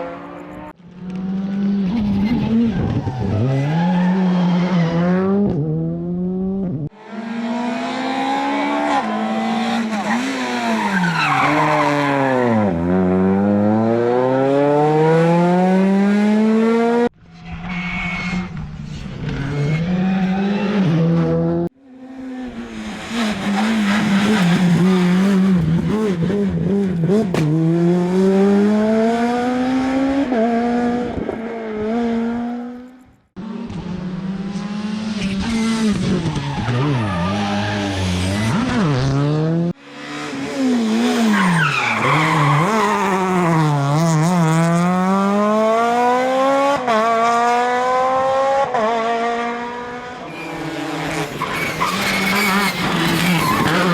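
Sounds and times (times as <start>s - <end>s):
rally car engines revving: 0.0s - 53.9s
tyres skidding: 7.0s - 12.9s, 39.9s - 44.6s, 50.1s - 53.9s.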